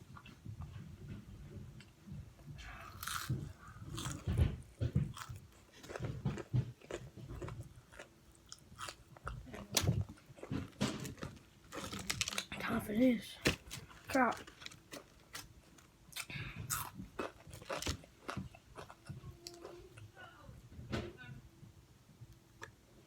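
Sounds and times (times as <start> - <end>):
person chewing crunchy food: 2.7 - 12.5, 13.6 - 19.7.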